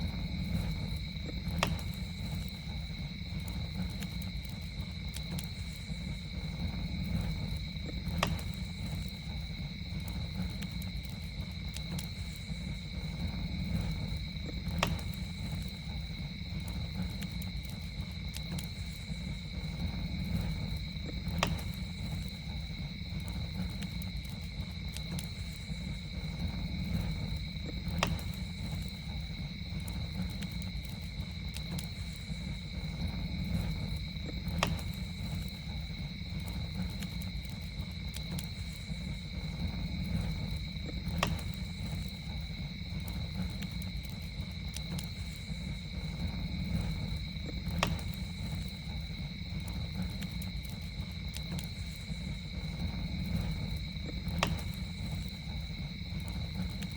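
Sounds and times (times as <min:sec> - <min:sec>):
campfire crackling: 0:00.0 - 0:56.9
insect drone: 0:00.0 - 0:56.9
low rumble of flames: 0:00.0 - 0:56.9
sharp fire pops: 0:00.0 - 0:56.9.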